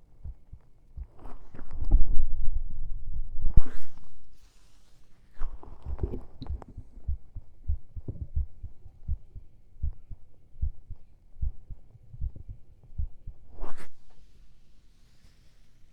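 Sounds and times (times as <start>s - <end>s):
soft low thumps: 0.0s - 3.6s, 5.5s - 13.6s
stomach fizzing crackles and pops: 5.3s - 7.0s.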